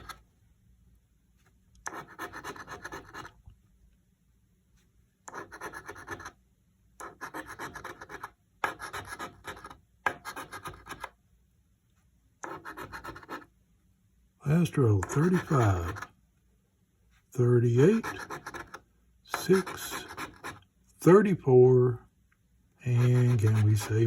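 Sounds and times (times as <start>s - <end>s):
lottery ticket being scratched: 0.0s - 0.2s, 1.9s - 3.3s, 5.3s - 6.4s, 7.0s - 11.2s, 12.4s - 13.5s, 14.5s - 16.1s, 17.4s - 21.2s, 22.8s - 24.0s.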